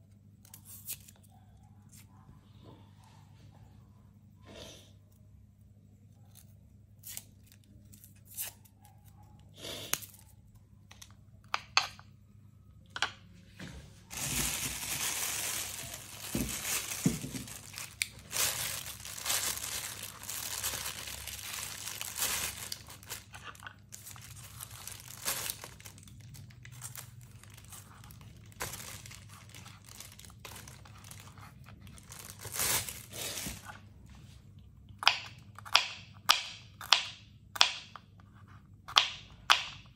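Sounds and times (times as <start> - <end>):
dry paper crinkling and tearing: 14.1 - 33.8.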